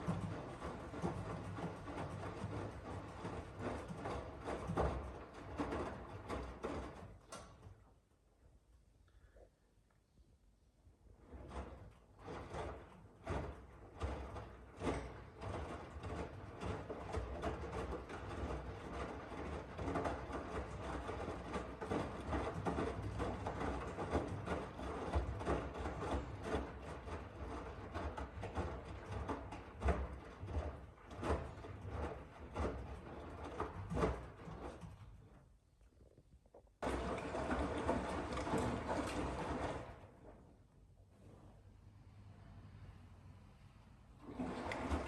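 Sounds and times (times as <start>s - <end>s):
knocks and rubbing: 0.0s - 7.8s, 11.2s - 40.6s
washing machine running: 0.0s - 7.9s, 11.0s - 35.6s, 36.8s - 45.0s.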